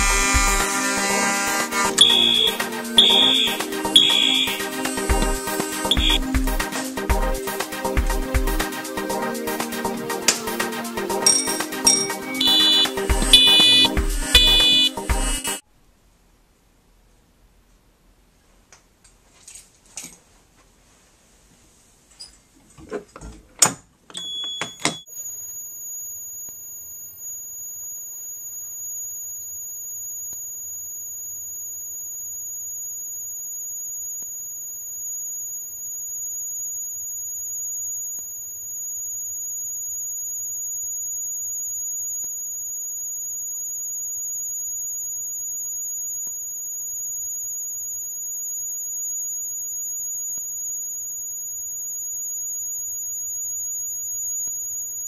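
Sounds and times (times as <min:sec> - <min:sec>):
brief lower alarm tone: 0:00.0 - 0:06.3, 0:11.2 - 0:15.0
fire alarm high-pitched tone: 0:00.0 - 0:06.6, 0:11.2 - 0:15.6, 0:24.2 - 0:55.0.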